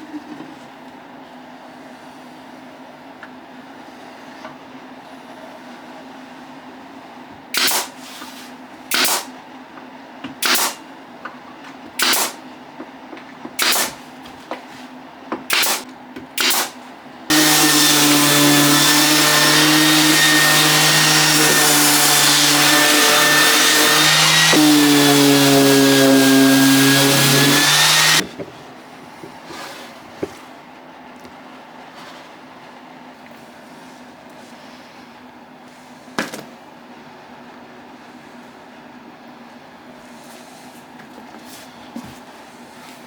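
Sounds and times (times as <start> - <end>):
pneumatic pin nailer firing: 7.5 - 8.0, 8.9 - 9.3, 10.4 - 10.8, 12.0 - 12.4, 13.6 - 14.0, 15.5 - 15.8, 16.4 - 28.2.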